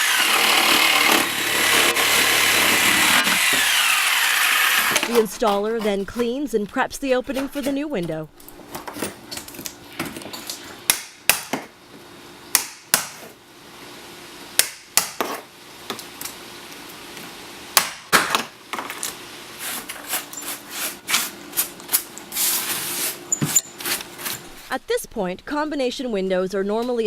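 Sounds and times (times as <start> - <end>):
tool scraping: 0.0 - 10.8, 18.8 - 24.7.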